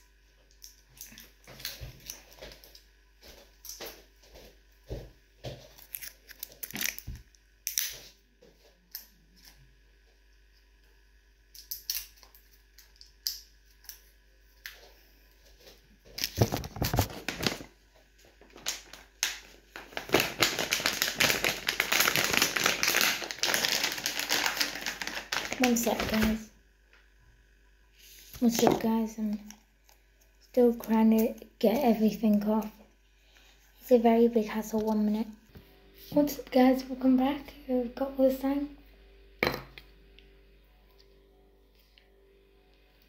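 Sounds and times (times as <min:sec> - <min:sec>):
packaging crinkling and tearing: 0:05.8 - 0:08.0, 0:16.2 - 0:17.7, 0:18.4 - 0:26.4.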